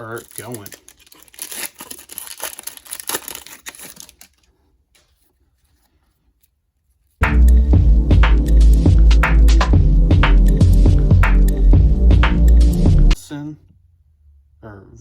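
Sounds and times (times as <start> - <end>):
wrapper tearing and crinkling: 0.0 - 5.9
loud background music: 7.2 - 13.2.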